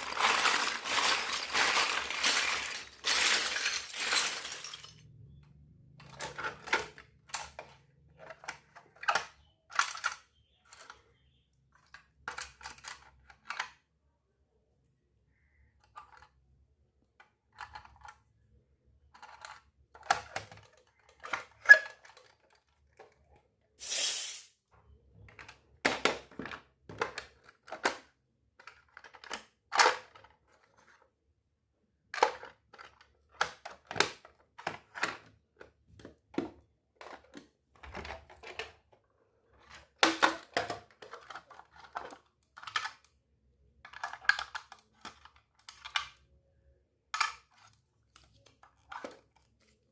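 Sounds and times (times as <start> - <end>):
packaging rustle: 0.0 - 4.8.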